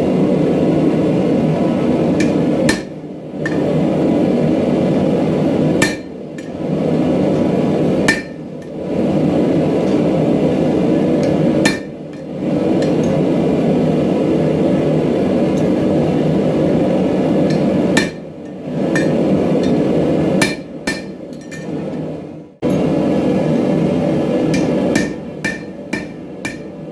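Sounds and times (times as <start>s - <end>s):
hammer striking steel: 2.2s - 3.8s, 5.8s - 6.6s, 8.1s - 8.8s, 11.2s - 13.2s, 17.5s - 21.8s, 24.5s - 26.9s.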